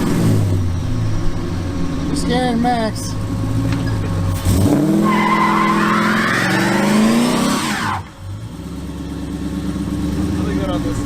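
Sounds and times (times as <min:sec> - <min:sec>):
car engine revving: 0:00.0 - 0:11.0
tires squealing: 0:03.6 - 0:11.0.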